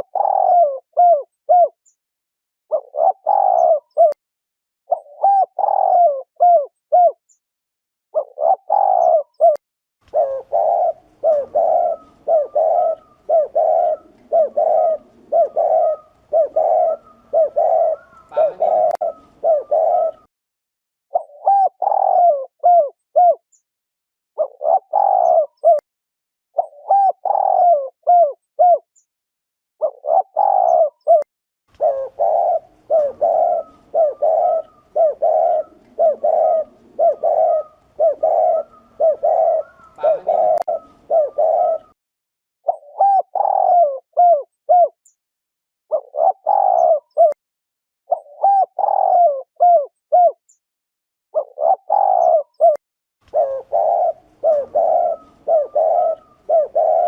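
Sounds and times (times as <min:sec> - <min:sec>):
dove cooing: 0:00.0 - 0:01.8, 0:02.7 - 0:04.2, 0:04.9 - 0:07.2, 0:08.2 - 0:20.3, 0:21.1 - 0:23.4, 0:24.4 - 0:25.8, 0:26.6 - 0:28.8, 0:29.8 - 0:42.0, 0:42.7 - 0:45.0, 0:45.9 - 0:47.4, 0:48.1 - 0:50.4, 0:51.4 - 0:57.0
higher bird call: 0:10.1 - 0:20.3, 0:31.8 - 0:42.0, 0:53.3 - 0:57.0.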